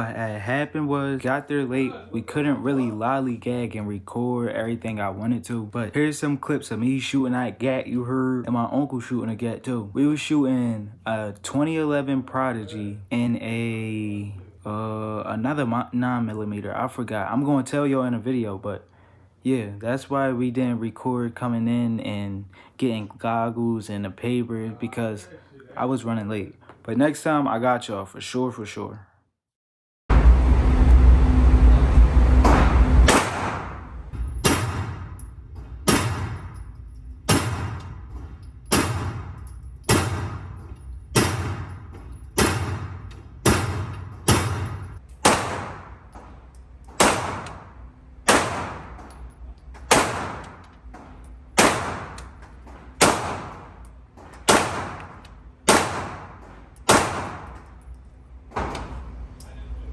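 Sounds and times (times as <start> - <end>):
heavy low rumble: 30.1 - 53.9
pistol shots with echo: 33.1 - 35.2, 35.8 - 36.6, 37.3 - 46.1, 47.0 - 49.1, 49.9 - 50.6, 51.6 - 52.4, 53.0 - 53.8, 54.5 - 57.7.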